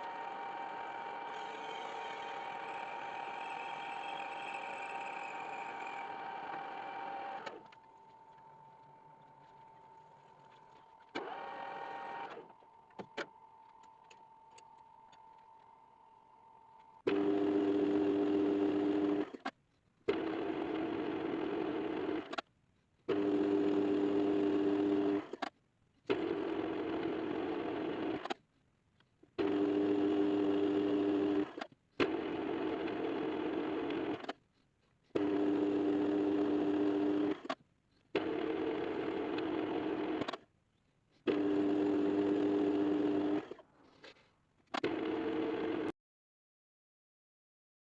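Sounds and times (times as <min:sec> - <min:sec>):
electric motor switching on and off: 0:00.0 - 0:15.2, 0:16.8 - 0:19.5, 0:23.1 - 0:25.4, 0:29.4 - 0:34.4, 0:35.2 - 0:37.6, 0:38.2 - 0:40.4, 0:41.3 - 0:43.6, 0:44.8 - 0:45.9.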